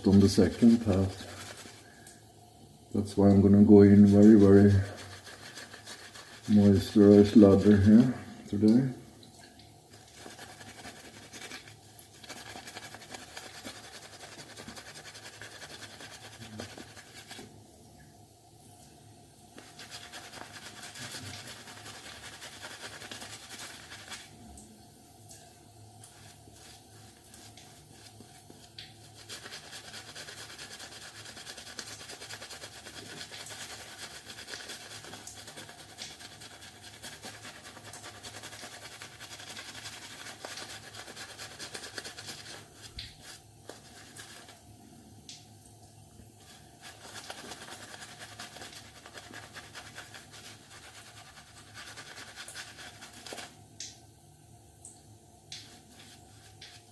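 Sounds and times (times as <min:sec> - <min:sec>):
razor scratching on face: 0:00.1 - 0:01.8, 0:03.9 - 0:07.8, 0:10.0 - 0:17.4, 0:19.6 - 0:24.3, 0:26.1 - 0:44.6, 0:46.4 - 0:53.5.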